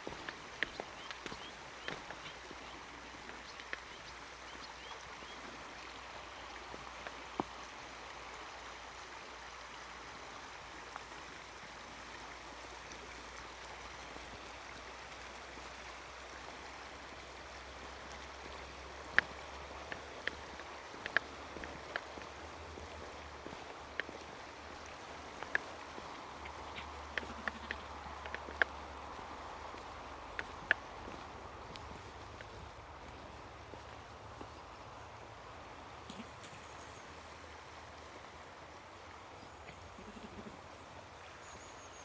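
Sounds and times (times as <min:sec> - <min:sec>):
stream flowing: 0:00.0 - 0:42.0.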